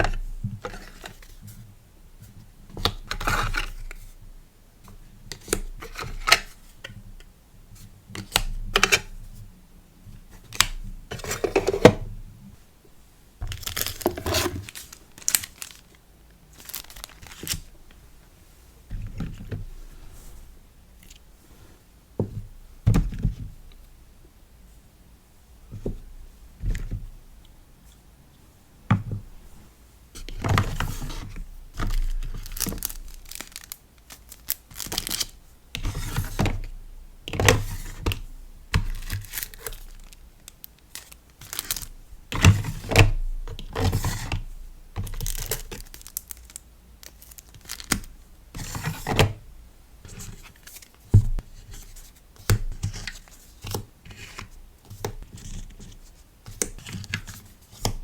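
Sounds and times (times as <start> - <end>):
paper and plastic rustling: 13.4 - 17.8, 30.2 - 36.7, 37.3 - 49.4, 50.0 - 58.0.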